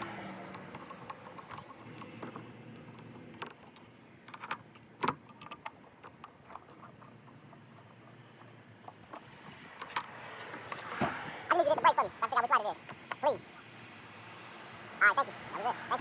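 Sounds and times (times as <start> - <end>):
light clicks and knocks from tools: 0.3 - 11.1.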